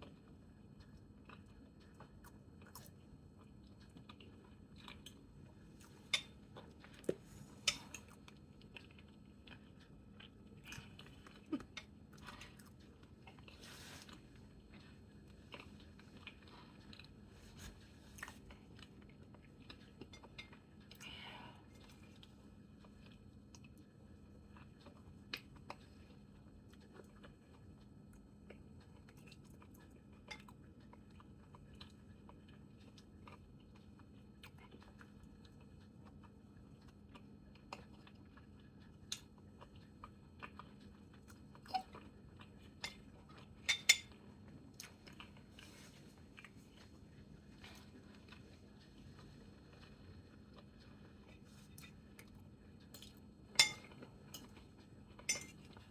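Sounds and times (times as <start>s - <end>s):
faint steady hum: 0.0s - 55.9s
person chewing food: 0.0s - 55.9s
cutlery clicking against plate: 53.6s - 53.9s.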